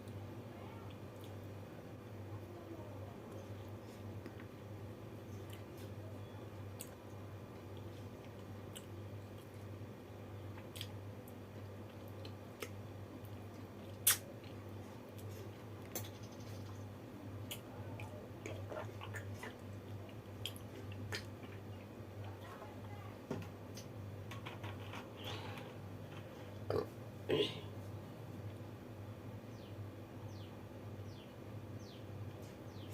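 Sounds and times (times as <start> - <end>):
person chewing: 7.6 - 9.6, 10.6 - 16.1, 17.4 - 21.6.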